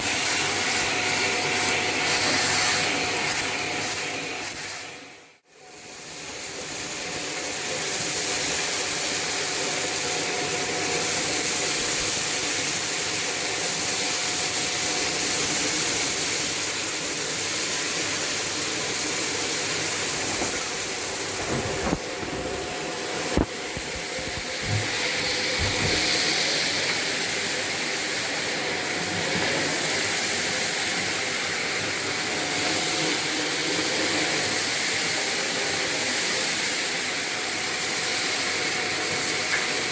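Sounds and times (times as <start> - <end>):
vacuum cleaner whining: 0.0 - 39.9.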